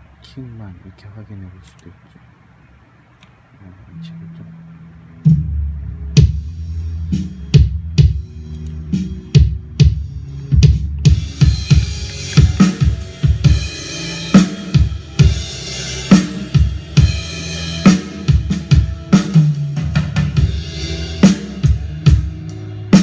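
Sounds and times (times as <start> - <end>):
bass guitar: 4.0 - 23.0
drum kit playing a groove: 5.2 - 23.0.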